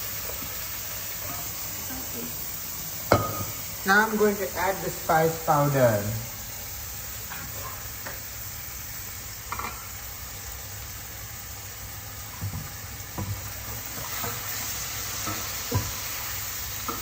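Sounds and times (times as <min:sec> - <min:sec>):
vegetables sizzling in oil: 0:00.0 - 0:17.0
spoon knocking and scraping pan: 0:03.1 - 0:03.7, 0:09.5 - 0:09.9, 0:12.3 - 0:17.0.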